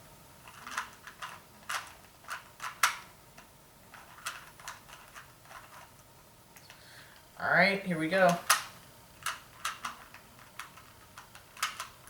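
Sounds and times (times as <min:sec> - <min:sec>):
plastic puzzle cube clacking: 0:00.4 - 0:05.9, 0:08.3 - 0:12.0.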